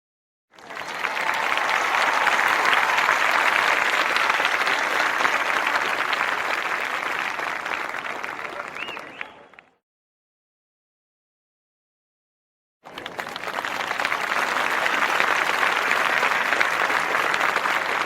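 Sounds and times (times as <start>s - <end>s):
audience applauding: 0.5s - 9.8s, 12.8s - 18.0s.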